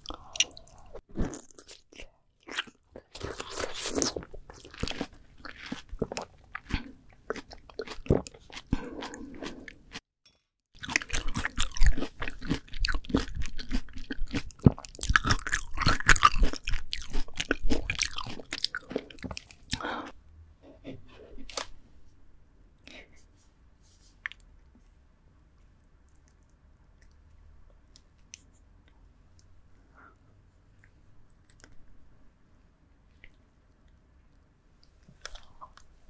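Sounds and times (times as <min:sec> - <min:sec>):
crunchy chewing of melon: 0:00.0 - 0:10.0, 0:10.8 - 0:20.1.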